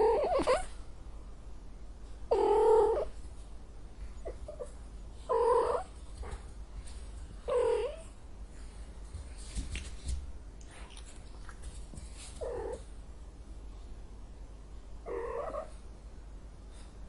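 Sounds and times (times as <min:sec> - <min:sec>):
faint low rumble: 0:00.0 - 0:17.0.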